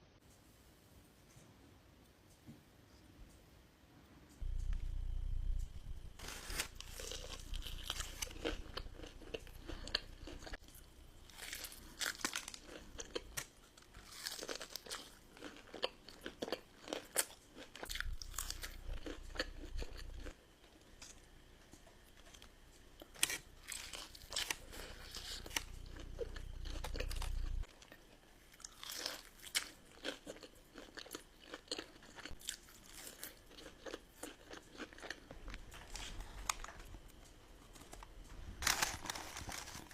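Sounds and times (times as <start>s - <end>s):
crunchy chewing of fried food: 4.4s - 39.9s.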